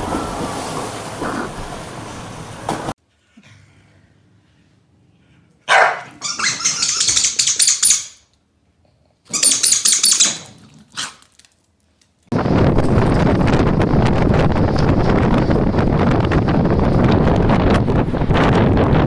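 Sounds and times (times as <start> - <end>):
dog barking loudly: 5.7 - 6.9
wind on microphone: 12.3 - 19.0.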